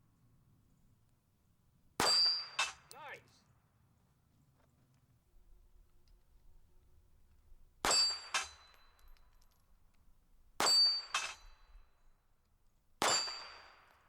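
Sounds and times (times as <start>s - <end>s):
bullets clanging on steel targets: 2.0s - 3.0s, 7.8s - 9.4s, 10.6s - 11.8s.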